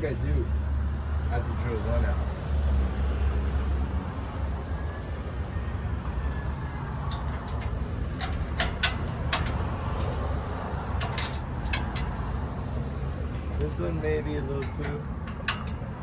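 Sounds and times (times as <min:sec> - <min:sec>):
metal parts clinking: 0:00.4 - 0:10.4, 0:11.0 - 0:12.2, 0:14.6 - 0:16.0.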